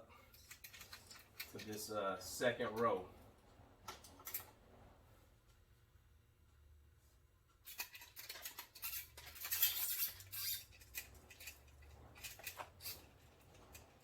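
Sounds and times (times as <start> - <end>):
rope rasping through pulley: 7.7 - 14.0.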